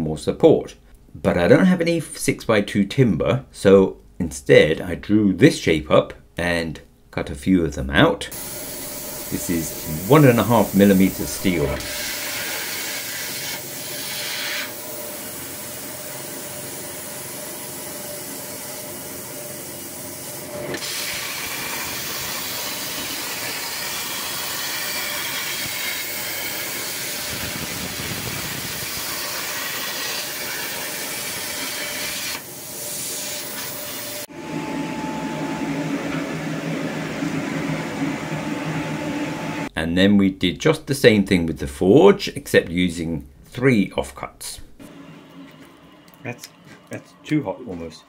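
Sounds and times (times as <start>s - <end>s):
plasma cutter hissing: 8.4s - 34.3s.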